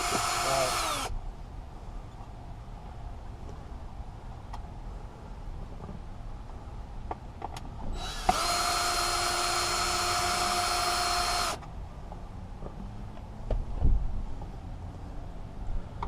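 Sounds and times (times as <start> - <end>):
power drill running: 0.0 - 1.1, 8.0 - 11.6.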